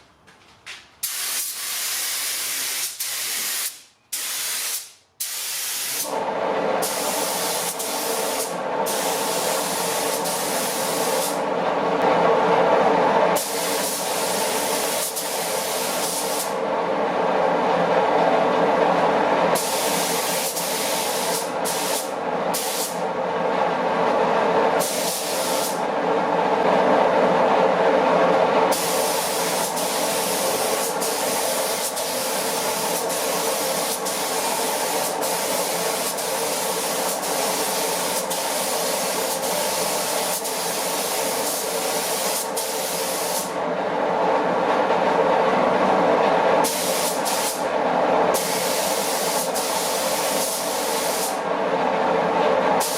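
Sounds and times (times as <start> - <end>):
spray gun hissing: 1.0 - 6.1, 6.8 - 11.4, 13.4 - 16.6, 19.6 - 23.0, 24.8 - 25.8, 28.7 - 43.5, 46.6 - 47.6, 48.4 - 51.4.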